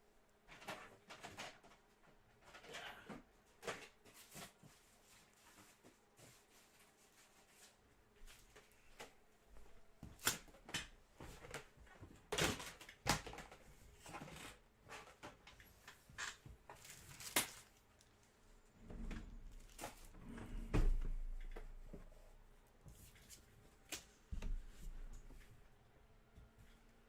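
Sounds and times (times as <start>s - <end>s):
cardboard and wrapper crinkling: 16.7s - 18.3s.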